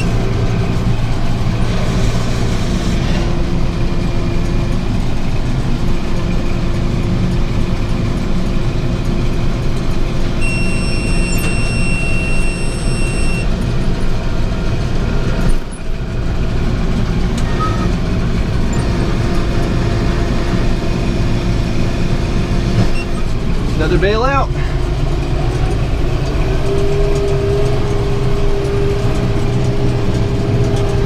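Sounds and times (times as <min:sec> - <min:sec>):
tractor engine running under load: 0:00.0 - 0:31.0
high electronic beep: 0:10.4 - 0:13.5.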